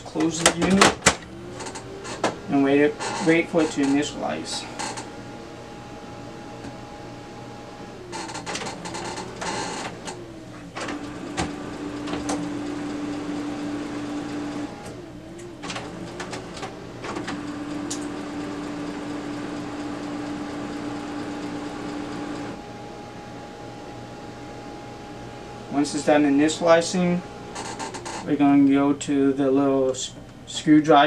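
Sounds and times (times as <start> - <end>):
printer motors humming: 0.0 - 31.0
printer mechanism clicks and rattles: 8.2 - 13.2, 14.6 - 20.1.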